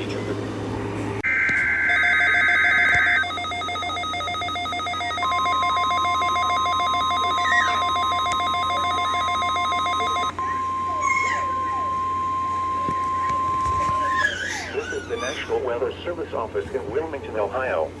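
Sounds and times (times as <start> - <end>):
bell-like electronic trill: 1.2 - 14.2
steady warning alarm tone: 1.2 - 14.3
warbling digital data tones: 1.2 - 14.3.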